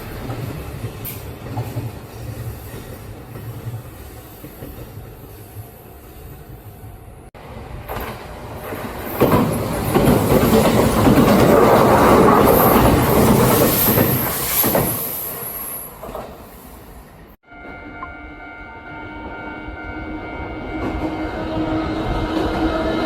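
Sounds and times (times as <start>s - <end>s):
electric train passing: 0.0s - 23.0s
wheels clattering over rail joints: 7.8s - 15.2s
high squeal of train wheels: 12.0s - 23.0s.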